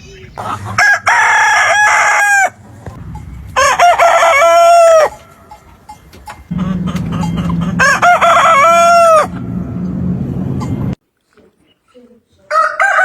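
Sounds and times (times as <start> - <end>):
rooster crowing: 0.7 - 2.6, 3.6 - 5.3, 6.5 - 9.8, 12.5 - 13.0.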